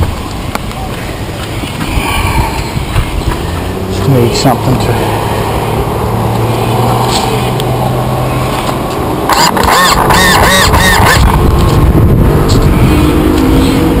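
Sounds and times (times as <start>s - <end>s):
model boat engine revving: 9.3s - 11.3s.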